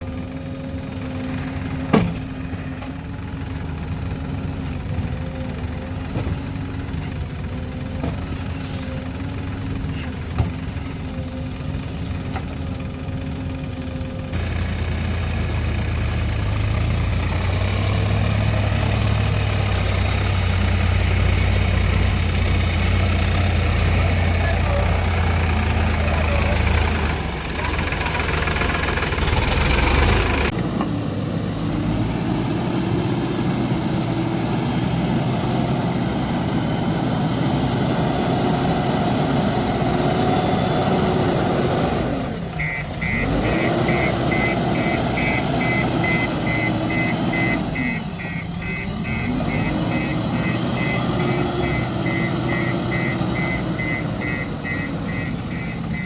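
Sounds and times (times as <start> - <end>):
diesel engine running under load: 0.0 - 56.0
reverse alarm beeping: 42.6 - 56.0.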